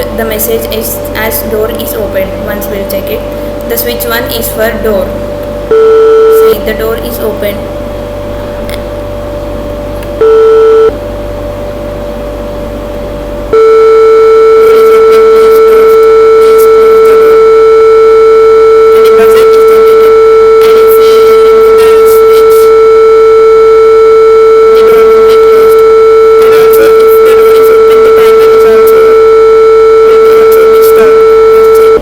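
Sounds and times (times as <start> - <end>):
electronic buzzer tone: 5.7 - 6.6, 10.2 - 11.0, 13.5 - 32.0.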